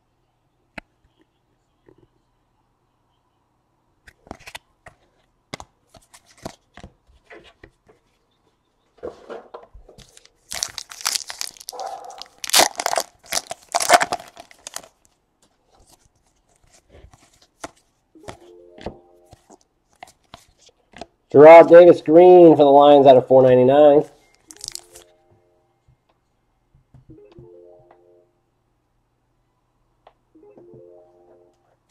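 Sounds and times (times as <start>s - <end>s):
cards clicking and rustling: 4.1s - 7.7s, 10.0s - 15.1s, 19.3s - 21.1s, 24.4s - 25.1s
card wrappers tearing: 10.0s - 15.1s, 24.4s - 25.0s.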